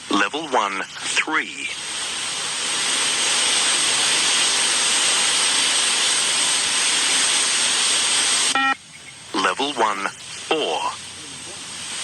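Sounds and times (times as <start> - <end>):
loud hiss of noise: 0.0 - 12.0
thin high whine: 2.9 - 12.0.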